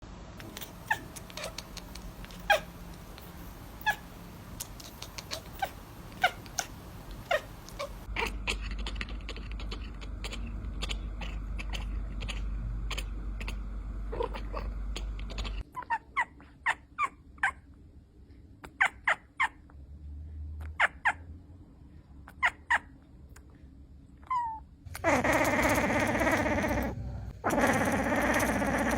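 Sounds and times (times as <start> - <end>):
low steady rumble: 0.0 - 15.6, 23.2 - 28.9
cats meowing: 0.4 - 15.6.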